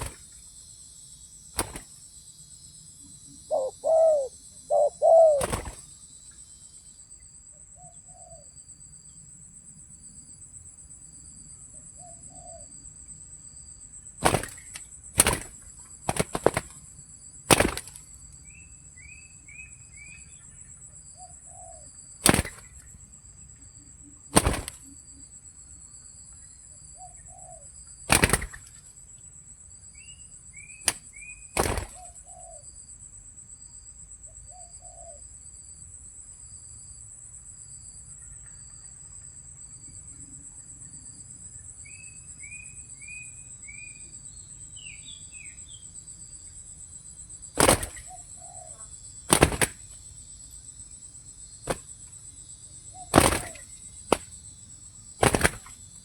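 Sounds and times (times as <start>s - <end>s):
loud slaps: 0.0s - 0.3s, 1.6s - 1.9s, 5.4s - 5.8s, 14.2s - 16.8s, 17.5s - 18.0s, 22.2s - 22.7s, 24.4s - 24.8s, 28.1s - 28.7s, 30.8s - 32.0s, 47.6s - 48.1s, 49.3s - 50.0s, 51.7s - 51.9s, 53.1s - 54.3s, 55.2s - 55.8s
high insect drone: 0.0s - 56.0s
dove cooing: 3.3s - 5.8s, 53.0s - 53.7s.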